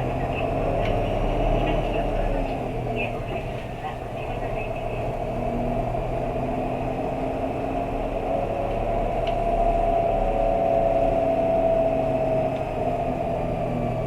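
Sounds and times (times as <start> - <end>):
bus diesel engine hum: 0.0 - 14.0
road noise: 0.0 - 14.0.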